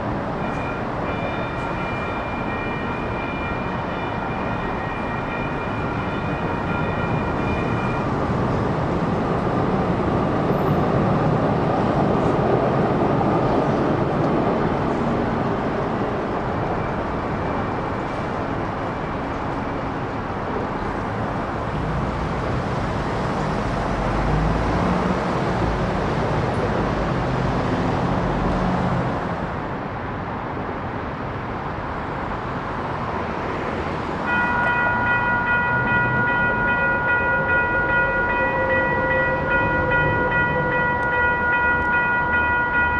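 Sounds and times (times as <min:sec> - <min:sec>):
railroad crossing bells ringing: 0:00.0 - 0:09.8, 0:34.2 - 0:42.9
road traffic passing: 0:00.0 - 0:42.9.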